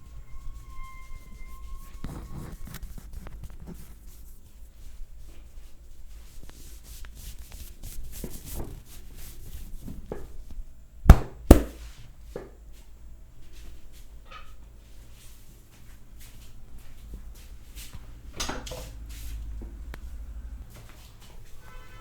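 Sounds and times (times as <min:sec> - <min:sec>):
hands rubbing skin and hair: 0:01.8 - 0:09.9.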